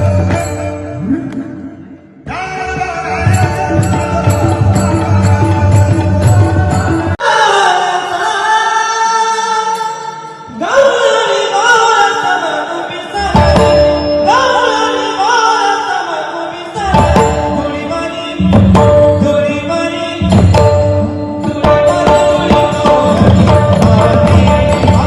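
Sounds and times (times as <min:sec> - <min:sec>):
drums: 0:02.3 - 0:07.8, 0:13.1 - 0:15.4, 0:16.7 - 0:25.0.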